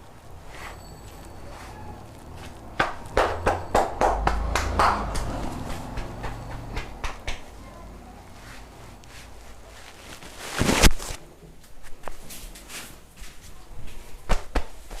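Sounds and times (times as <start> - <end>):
sharp taps or claps: 2.8 - 7.5, 14.3 - 15.0.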